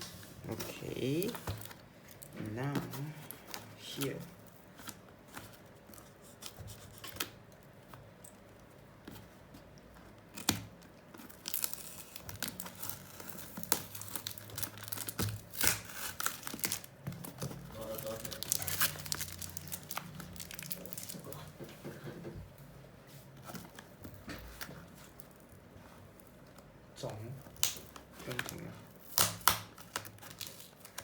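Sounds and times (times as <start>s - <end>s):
packaging ripping and crinkling: 10.2s - 21.5s, 27.3s - 31.0s.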